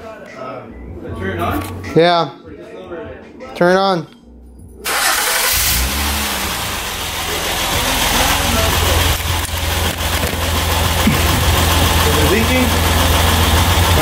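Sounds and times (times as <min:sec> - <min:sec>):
car engine starting and idling: 0:04.8 - 0:14.0.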